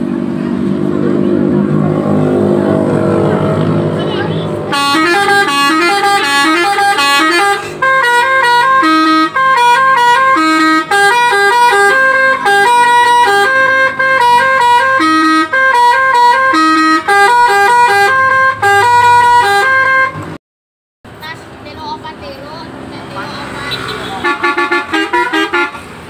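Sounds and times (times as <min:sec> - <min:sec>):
air horn playing a melody: 0:04.6 - 0:20.2, 0:24.2 - 0:25.9.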